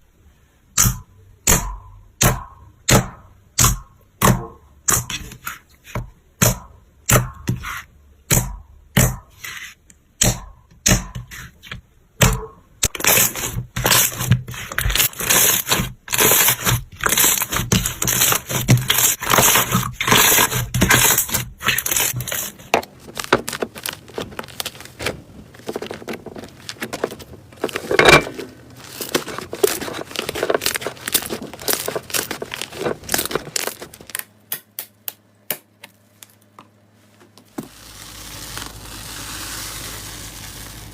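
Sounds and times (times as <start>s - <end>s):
slime crackling and popping: 28.8s - 34.8s.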